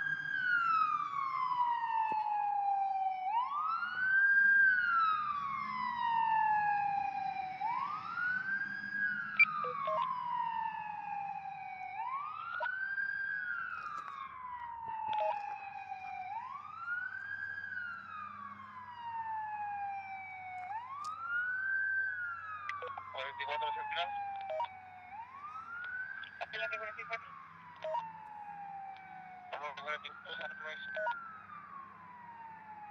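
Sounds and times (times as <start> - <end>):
fire truck siren wailing: 0.0 - 32.9.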